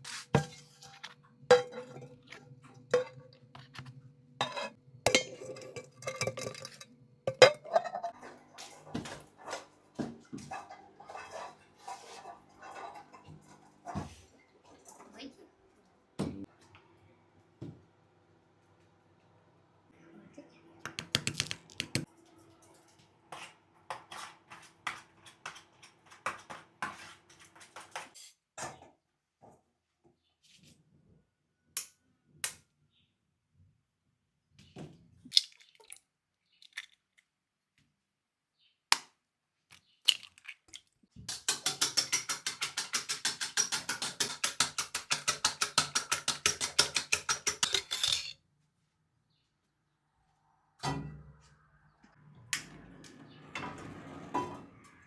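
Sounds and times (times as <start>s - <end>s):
utensils clicking against dishes: 41.3s - 48.4s.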